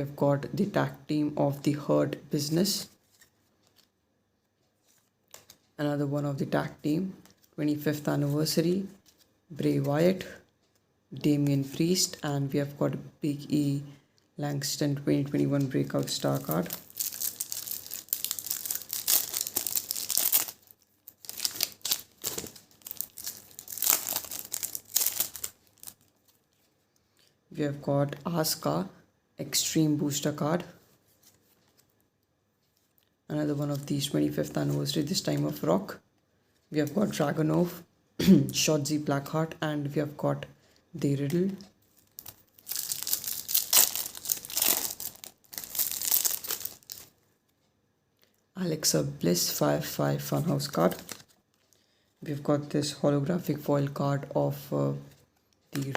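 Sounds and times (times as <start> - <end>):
plastic wrapper crinkling: 15.8 - 26.8, 41.6 - 47.2, 50.2 - 51.8.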